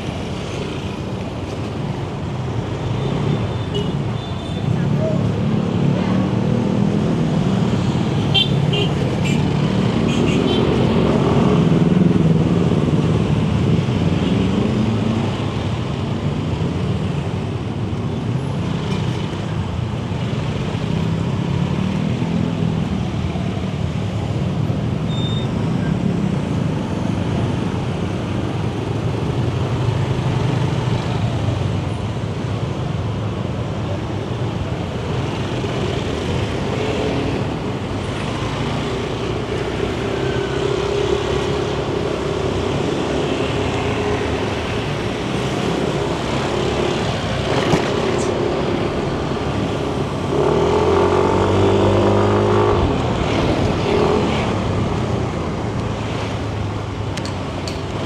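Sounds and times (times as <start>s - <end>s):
road and wind noise: 0.0s - 58.0s.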